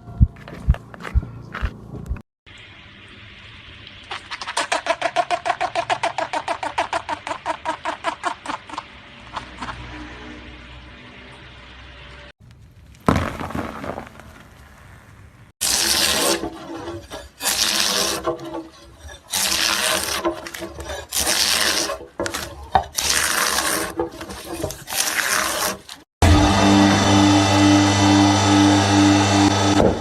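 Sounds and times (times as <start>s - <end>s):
rasping scraping strokes: 15.6s - 26.1s.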